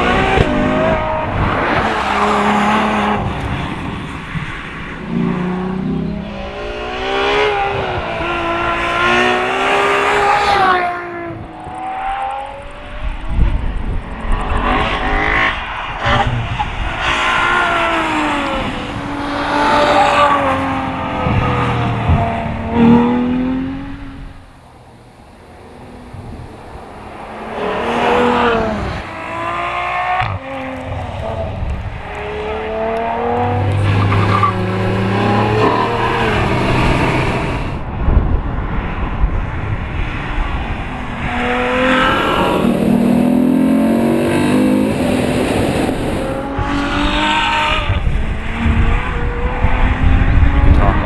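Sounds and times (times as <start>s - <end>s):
car engine accelerating hard: 27.2s - 37.8s, 40.4s - 51.0s.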